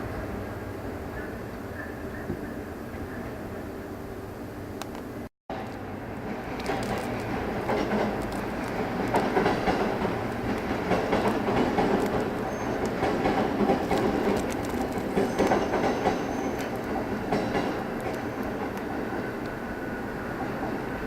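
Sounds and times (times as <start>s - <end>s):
train wheels clacking: 6.2s - 21.0s
faint wheel squeals: 12.5s - 12.9s.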